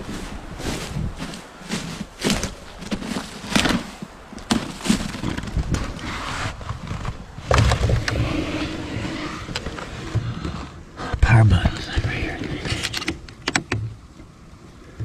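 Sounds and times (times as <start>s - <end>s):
equipment handling clicks and rustling: 0.0s - 8.2s, 12.4s - 13.8s.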